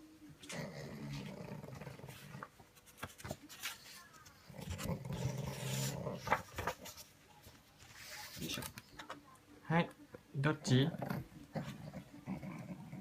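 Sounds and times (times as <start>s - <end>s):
dog snorting and grunting: 4.4s - 6.8s, 10.7s - 13.0s.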